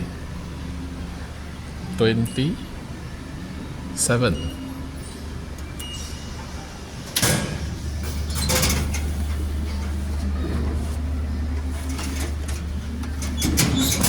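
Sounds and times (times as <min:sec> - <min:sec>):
vending machine motor hum: 0:00.0 - 0:14.0
vending machine click: 0:07.1 - 0:10.0.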